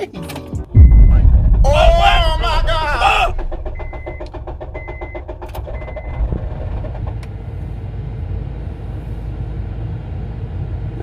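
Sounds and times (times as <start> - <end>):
steady low rumble: 0.7 - 9.5
thump: 0.8 - 6.8
engine starter rattling: 0.8 - 7.5
dashboard warning chime: 3.6 - 6.2.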